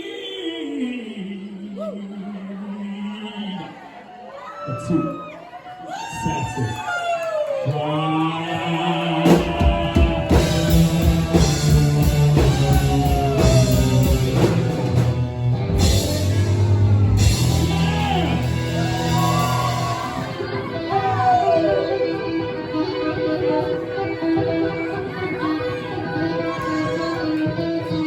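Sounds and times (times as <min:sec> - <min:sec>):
drums: 0:08.8 - 0:28.0
bass guitar: 0:09.2 - 0:28.0
electric guitar bending notes: 0:09.2 - 0:28.0.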